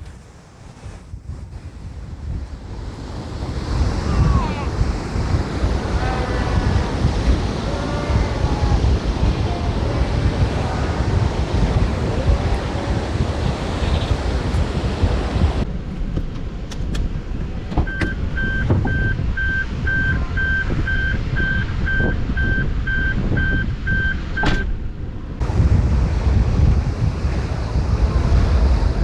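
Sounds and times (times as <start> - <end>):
wind buffeting microphone: 0.0 - 29.0
car warning chime beeping: 17.9 - 24.8.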